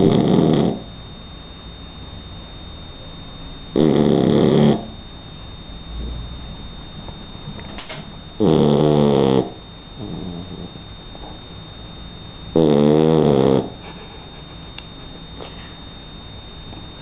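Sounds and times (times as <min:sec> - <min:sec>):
puppy snoring: 0:00.0 - 0:00.9, 0:03.7 - 0:05.0, 0:08.4 - 0:11.3, 0:12.5 - 0:14.6.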